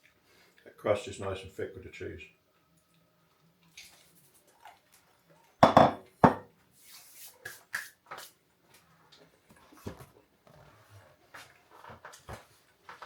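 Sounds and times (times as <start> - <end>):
tableware clinking: 5.6 - 6.4
tableware knocking: 5.6 - 6.5.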